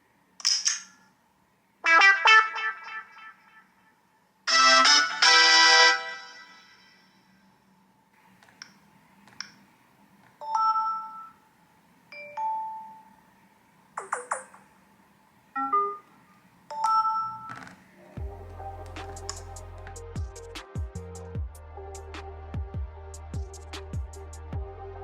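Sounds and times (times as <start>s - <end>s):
phone notification dings: 10.4s - 11.4s, 16.7s - 17.5s.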